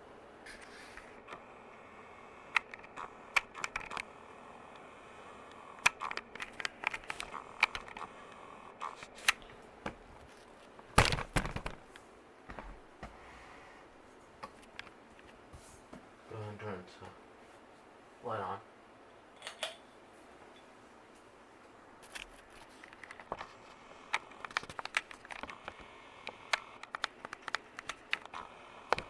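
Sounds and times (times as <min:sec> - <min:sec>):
ceiling fan humming: 0:00.0 - 0:29.0
sharp clicks and pops: 0:02.4 - 0:04.1, 0:05.5 - 0:10.3, 0:10.9 - 0:11.9, 0:22.0 - 0:29.0.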